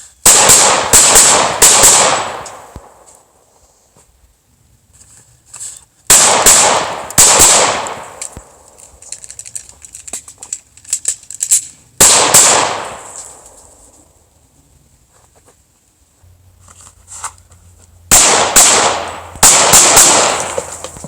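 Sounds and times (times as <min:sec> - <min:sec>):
pistol shots with long echo: 0:00.2 - 0:03.0, 0:06.1 - 0:08.7, 0:12.0 - 0:13.5, 0:18.1 - 0:20.8.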